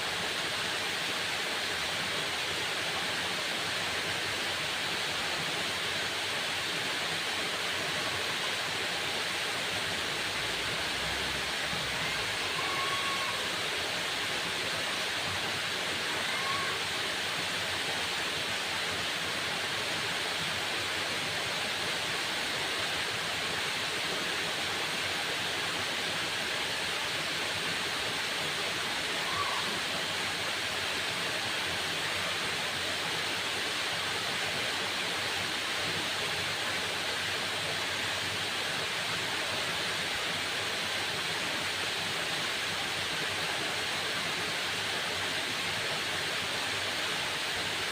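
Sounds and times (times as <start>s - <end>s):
waterfall rushing: 0.0s - 47.9s.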